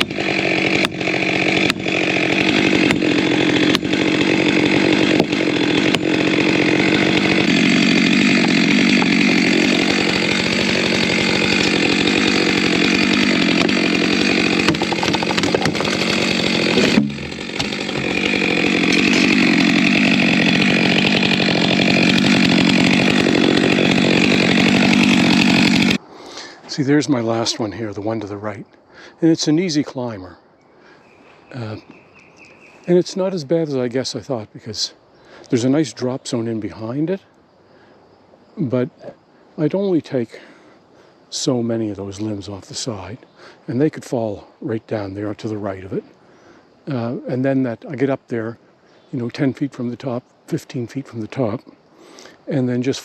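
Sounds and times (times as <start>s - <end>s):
chainsaw cutting wood: 0.0s - 26.0s.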